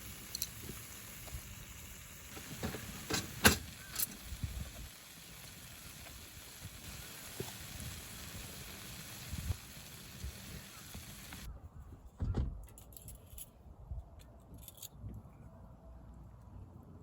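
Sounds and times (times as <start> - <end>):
rushing wind: 2.4 - 12.6.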